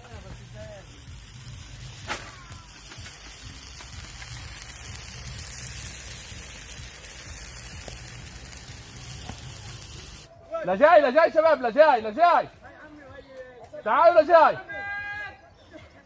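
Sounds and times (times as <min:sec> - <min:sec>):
meat sizzling on a grill: 0:00.0 - 0:10.3.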